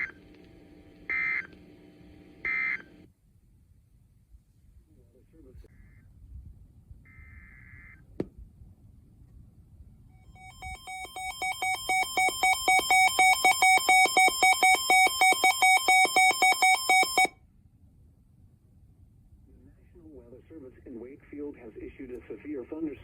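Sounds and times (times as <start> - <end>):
rapid electronic alert beeps: 10.3 - 17.3.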